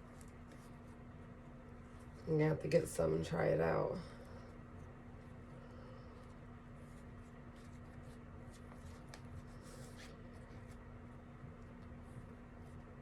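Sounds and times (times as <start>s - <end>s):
ribbon rustling: 4.5s - 13.0s.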